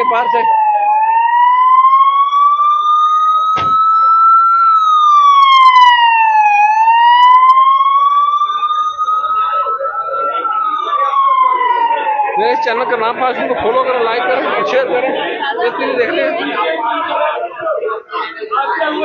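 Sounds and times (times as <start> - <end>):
emergency siren wailing: 0.0 - 17.2
faint voices: 7.5 - 19.0.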